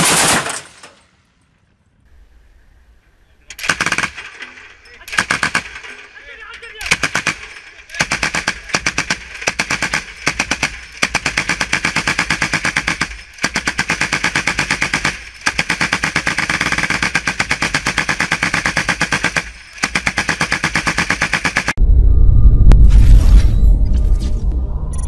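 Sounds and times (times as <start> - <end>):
machine gun firing bursts: 0.0 - 0.6, 3.6 - 4.4, 5.1 - 6.0, 6.8 - 21.8.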